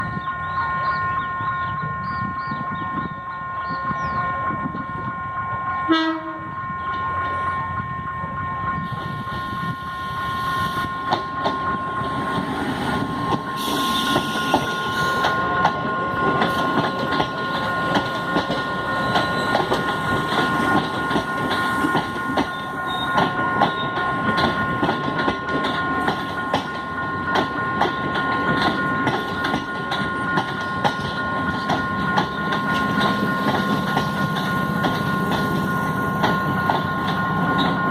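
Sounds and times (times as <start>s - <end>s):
train horn blast: 0.5s - 11.0s
train wheels clicking over rail joints: 11.0s - 37.9s.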